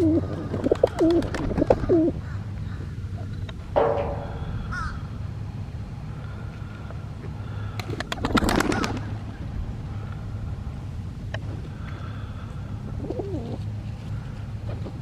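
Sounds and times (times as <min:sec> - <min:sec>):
bird calling: 0:00.0 - 0:05.1
steady low rumble: 0:02.1 - 0:07.8.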